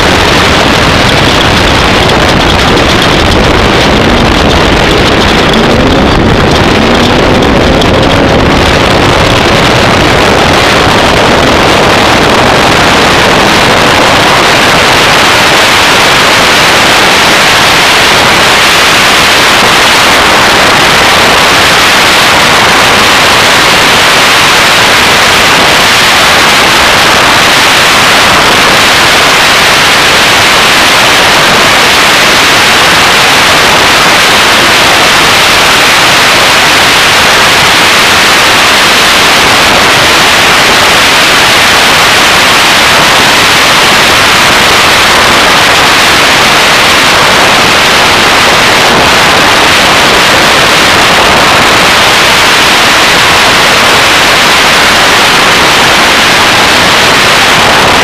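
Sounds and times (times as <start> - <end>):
loud steady hissing: 0.0 - 58.0.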